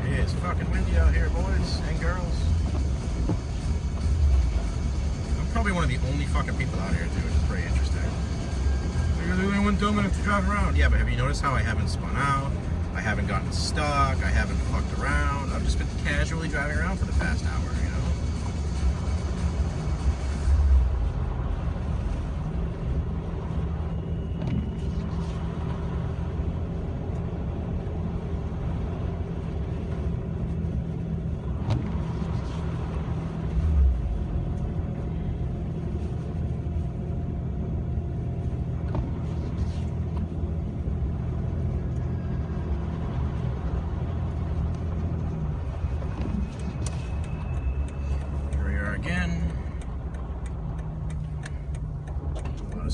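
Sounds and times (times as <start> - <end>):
car engine and road noise: 0.0 - 52.9.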